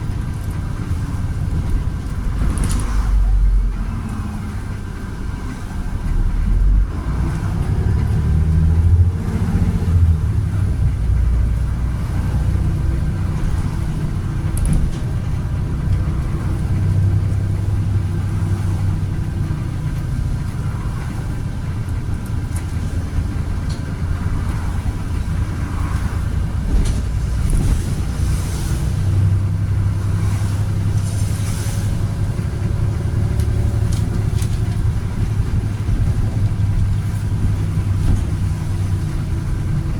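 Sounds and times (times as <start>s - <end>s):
bus engine drone: 0.0s - 39.9s.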